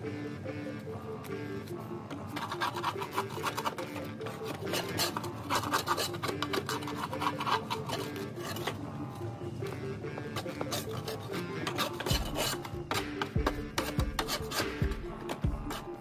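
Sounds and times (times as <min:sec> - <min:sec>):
crowbar scraping mower deck: 0:02.4 - 0:08.8, 0:10.4 - 0:15.9.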